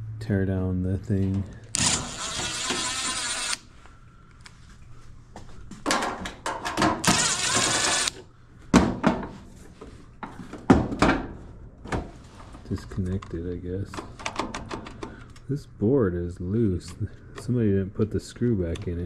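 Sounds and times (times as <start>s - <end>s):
cordless drill running: 1.7s - 3.7s, 7.0s - 8.2s
knocks and clicks of parts: 5.8s - 8.1s, 14.0s - 15.4s.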